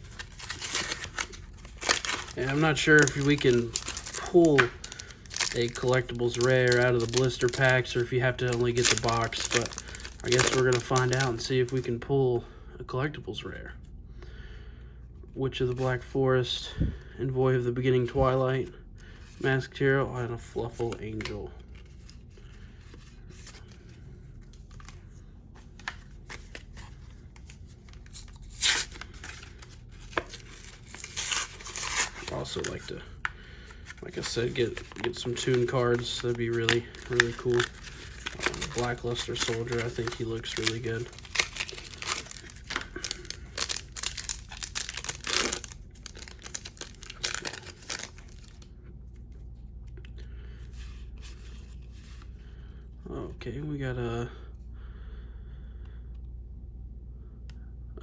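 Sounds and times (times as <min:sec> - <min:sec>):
foil wrapper tearing: 0:00.0 - 0:11.5, 0:27.9 - 0:32.9, 0:33.7 - 0:48.6
packaging being torn and crinkled: 0:00.0 - 0:11.9, 0:25.8 - 0:32.9, 0:33.7 - 0:48.7
wrapper and cards rustling: 0:00.0 - 0:11.9, 0:20.3 - 0:49.8.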